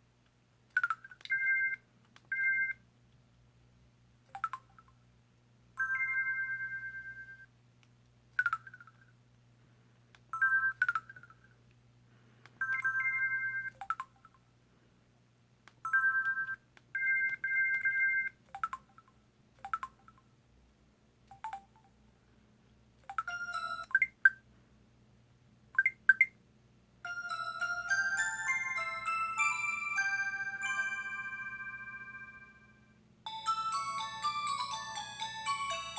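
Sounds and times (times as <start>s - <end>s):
mobile phone beeps and chirps: 0.8s - 2.8s, 12.6s - 14.2s, 15.8s - 19.0s, 21.3s - 21.9s, 23.1s - 24.4s, 25.8s - 26.4s.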